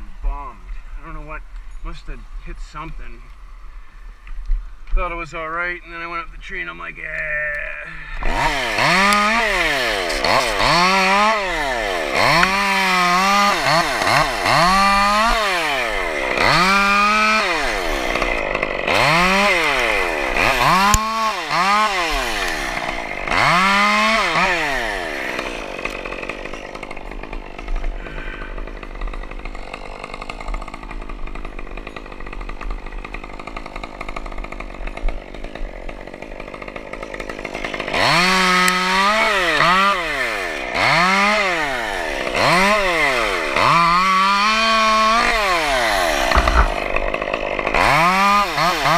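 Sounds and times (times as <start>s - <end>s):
chainsaw revving: 7.5s - 48.9s.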